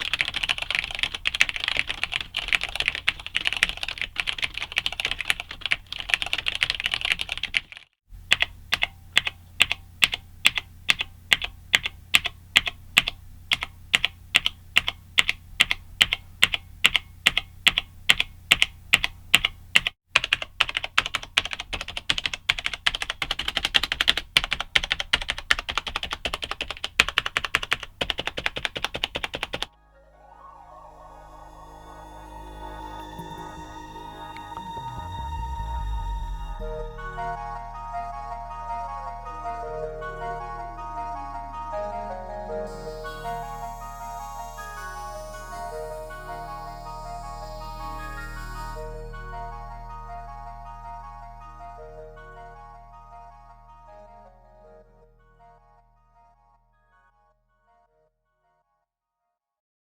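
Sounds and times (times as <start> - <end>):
keyboard typing clicks: 0.0 - 29.7
soft ambient music: 29.7 - 56.8.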